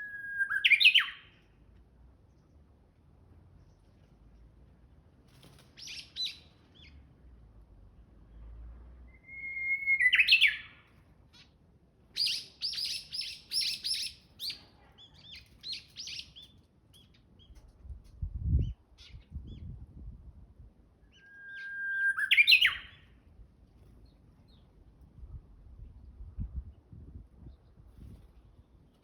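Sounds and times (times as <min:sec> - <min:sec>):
bush warbler singing: 0:12.2 - 0:17.6, 0:21.1 - 0:23.2.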